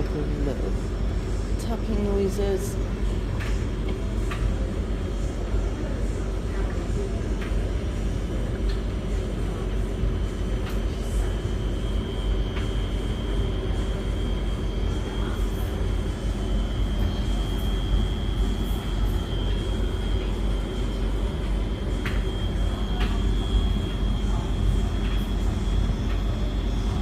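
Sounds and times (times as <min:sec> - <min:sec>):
high motor whine: 0:07.7 - 0:27.0.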